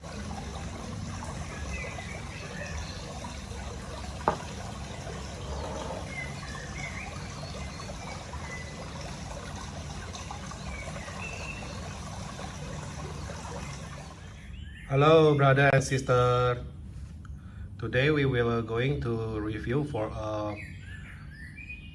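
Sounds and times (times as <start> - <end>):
water trickling: 0.0 - 14.6.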